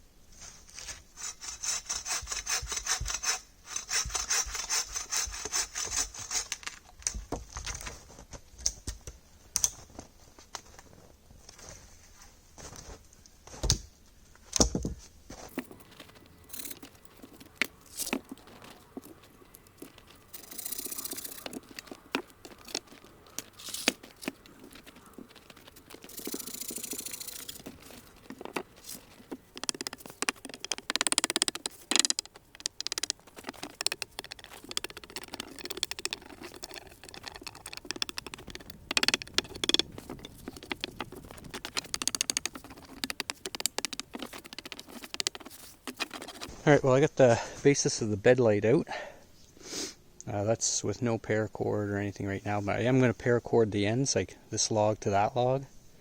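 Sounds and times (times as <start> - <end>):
scraping and rustling: 14.4 - 46.7
wooden logs knocking: 14.6 - 46.5
footsteps crunching in snow: 15.3 - 30.2.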